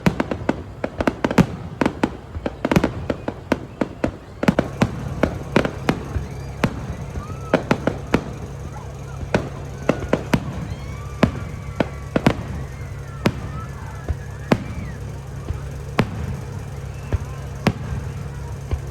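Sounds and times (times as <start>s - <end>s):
fireworks bangs and pops: 0.0s - 18.9s
steady low hum: 4.5s - 18.9s.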